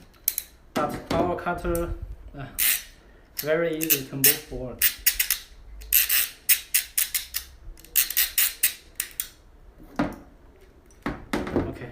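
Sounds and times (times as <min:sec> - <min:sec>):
ratchet cable cutter clicking: 0:00.1 - 0:00.6, 0:02.6 - 0:09.4.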